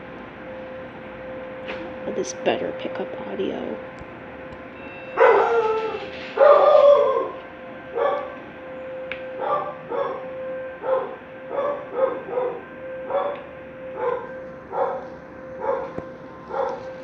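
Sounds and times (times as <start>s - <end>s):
warning siren steady tone: 0.0s - 17.0s
dog barking: 5.2s - 6.6s, 8.0s - 8.3s, 10.8s - 13.4s, 14.0s - 15.0s, 15.6s - 16.8s.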